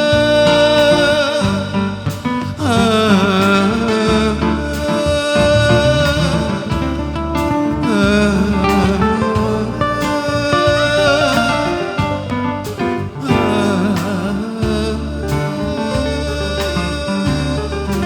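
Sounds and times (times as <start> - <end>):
band playing slow ballad: 0.0 - 18.0.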